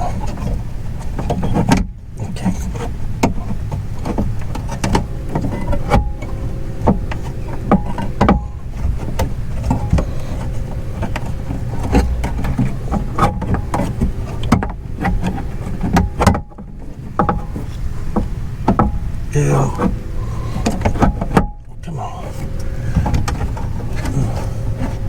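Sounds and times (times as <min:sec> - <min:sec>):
steady low rumble: 0:00.0 - 0:25.0
clicks knocks and rattles in car door: 0:01.1 - 0:04.9.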